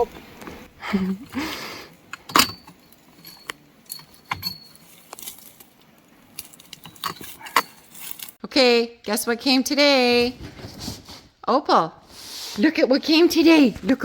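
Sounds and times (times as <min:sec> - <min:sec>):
small hard objects clinking: 0:02.1 - 0:08.4.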